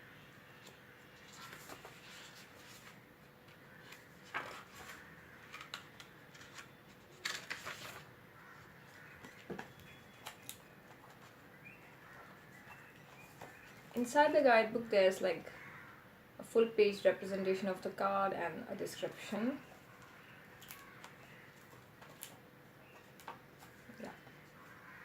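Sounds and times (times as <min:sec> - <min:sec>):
book pages turning: 0:00.6 - 0:14.0, 0:19.6 - 0:25.0.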